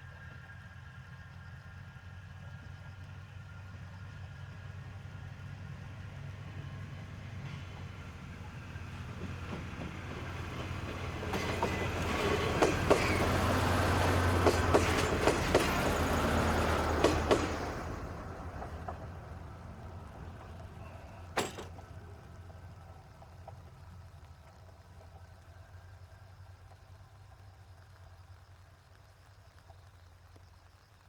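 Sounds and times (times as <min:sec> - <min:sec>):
diesel railcar engine hum: 0:00.0 - 0:28.6
wheels clicking over rail joints: 0:07.8 - 0:25.9.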